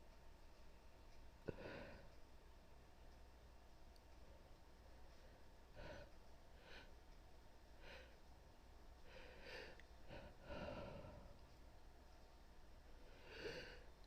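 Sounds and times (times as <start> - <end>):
woman breathing faintly: 5.0 - 11.7, 12.8 - 14.0.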